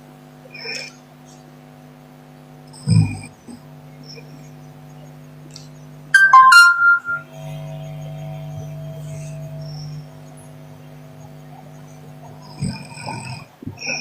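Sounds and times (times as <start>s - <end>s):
electronic chime: 6.2s - 7.3s
steady electrical hum: 7.0s - 14.0s.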